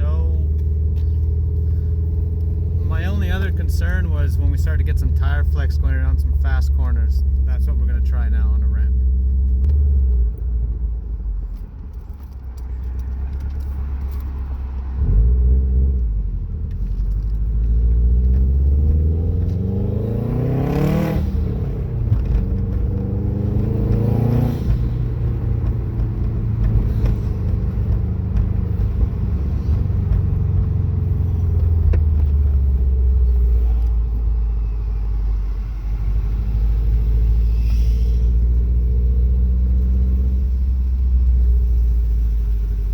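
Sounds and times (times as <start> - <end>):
car engine revving: 16.8 - 42.9.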